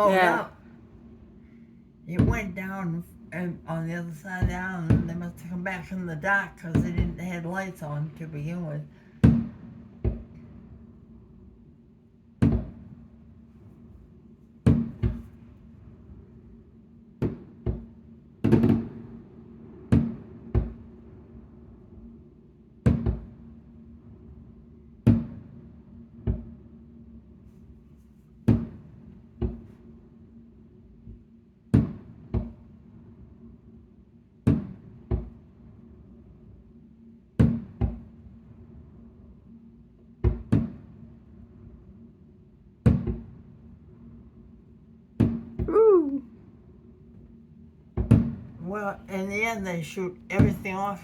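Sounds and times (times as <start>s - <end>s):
steady low hum: 0.0s - 16.9s.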